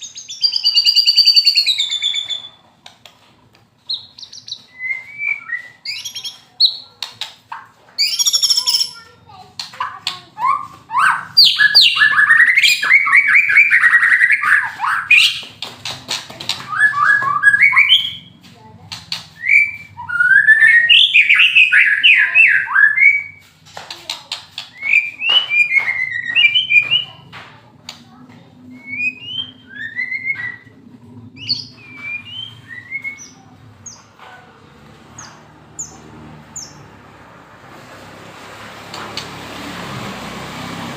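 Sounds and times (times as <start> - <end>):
songbird singing rattling notes: 0.0 - 2.9, 3.8 - 27.3, 28.7 - 37.0
traffic rumble: 0.0 - 40.9
higher bird whistles: 0.2 - 2.6, 3.9 - 6.8, 8.0 - 9.0, 10.4 - 15.4, 16.7 - 18.3, 19.3 - 23.4, 31.4 - 33.4.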